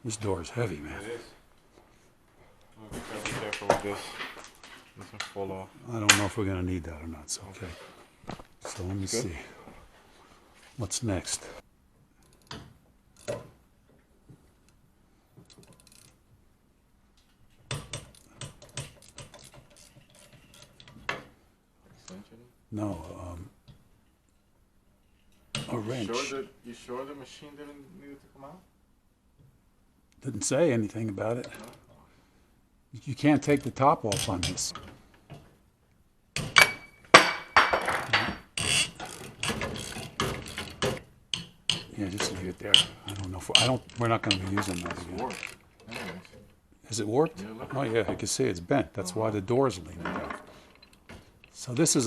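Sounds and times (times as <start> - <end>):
sharp metallic clicks and knocks: 17.2 - 21.3, 36.4 - 46.5
hand tools clattering: 36.4 - 46.4.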